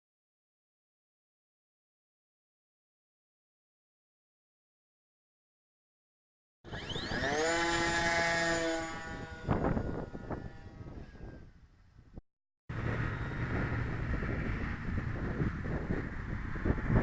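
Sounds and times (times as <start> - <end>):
electric motors whining: 6.7 - 11.6, 12.7 - 15.5
wind on microphone: 6.7 - 17.0.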